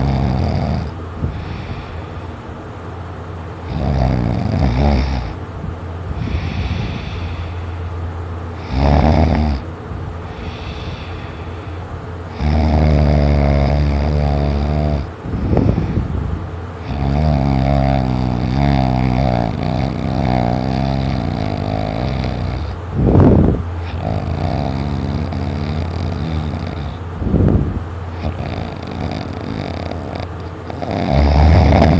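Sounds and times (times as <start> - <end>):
heavy rattling snoring: 0.0 - 2.3, 3.6 - 5.5, 6.1 - 7.9, 8.5 - 31.9
short loud breaths: 1.2 - 2.4, 10.3 - 12.0.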